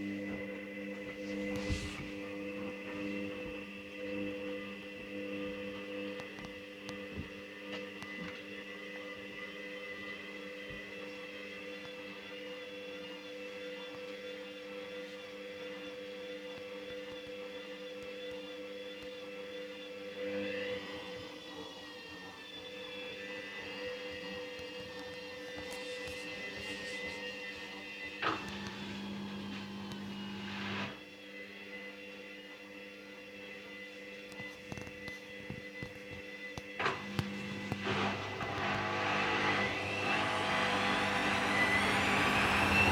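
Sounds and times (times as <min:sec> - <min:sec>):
washing machine motor whining: 0:19.1 - 0:31.2, 0:34.1 - 0:42.9
washing machine drum motor humming: 0:36.8 - 0:42.9.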